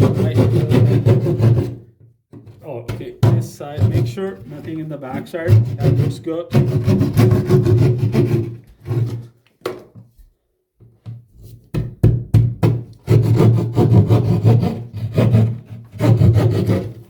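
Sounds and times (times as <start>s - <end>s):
hand saw cutting drywall: 0.0s - 1.8s, 3.0s - 9.4s, 12.6s - 17.0s.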